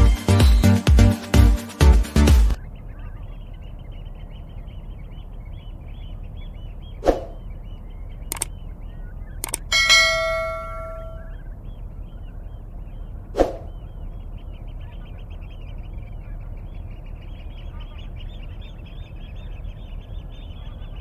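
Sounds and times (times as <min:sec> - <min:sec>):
bird chirps: 0:00.0 - 0:21.0
clicks: 0:08.3 - 0:08.5, 0:09.4 - 0:11.2
bell-like ding: 0:09.7 - 0:11.3
sharp call: 0:09.7 - 0:11.4.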